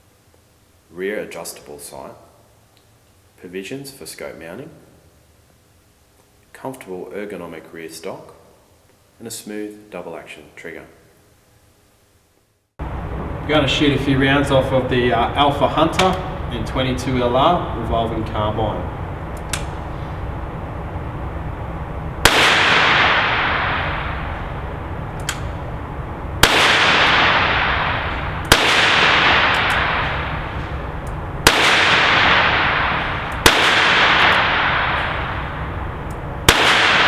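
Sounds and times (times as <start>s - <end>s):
rifle shots echoing indoors: 22.2s - 37.0s.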